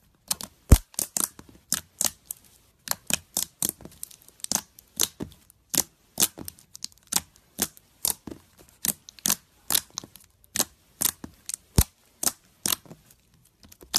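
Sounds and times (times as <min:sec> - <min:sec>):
slime squeezed clicking and popping: 0:00.3 - 0:02.2.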